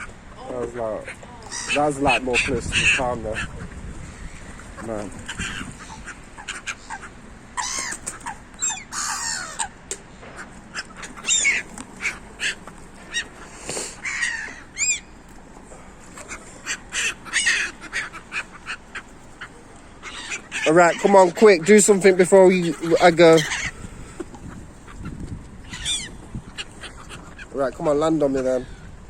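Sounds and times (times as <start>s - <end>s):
seagulls calling: 0.0s - 29.0s.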